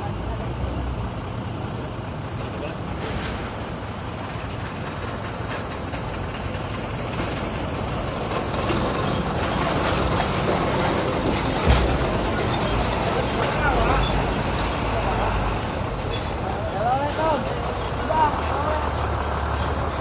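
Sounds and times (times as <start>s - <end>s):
road traffic noise: 0.0s - 20.0s.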